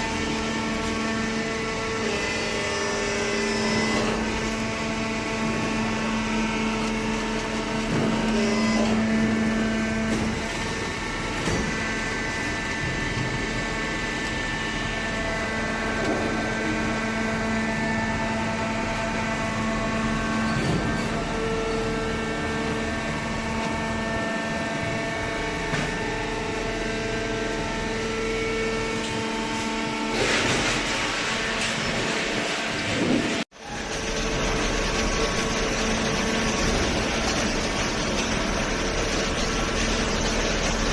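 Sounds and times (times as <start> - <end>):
hydraulic baler motor humming: 0.0 - 40.9.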